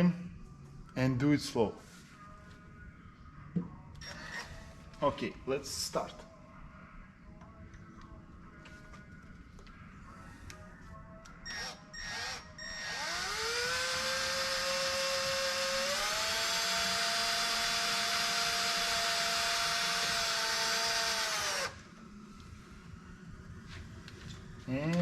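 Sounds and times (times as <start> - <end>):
electric drill drilling metal: 11.5 - 21.8.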